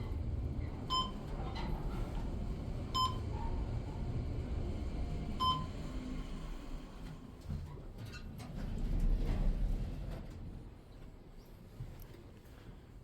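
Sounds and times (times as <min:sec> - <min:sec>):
elevator electronic beep: 0:00.9 - 0:01.2, 0:03.0 - 0:03.2, 0:05.4 - 0:05.7.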